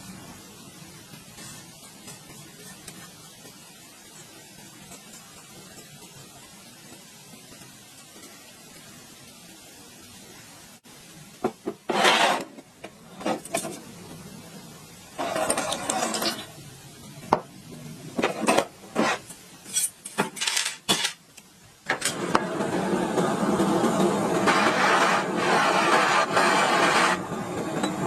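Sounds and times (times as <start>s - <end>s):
scraping and rubbing on metal: 11.9s - 13.8s, 15.2s - 16.5s, 18.2s - 20.2s, 23.9s - 27.3s.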